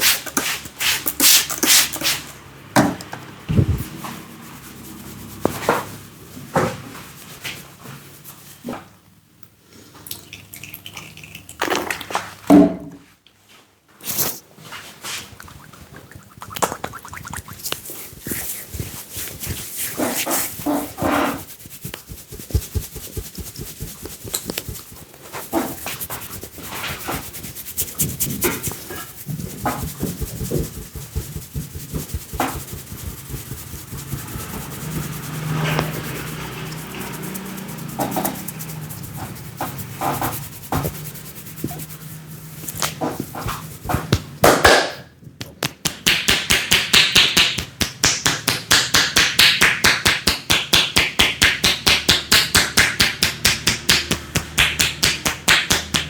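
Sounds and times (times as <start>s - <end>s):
hands slapping and rubbing head: 14.0s - 56.0s
fast even tapping on head: 15.5s - 42.0s, 42.7s - 56.0s.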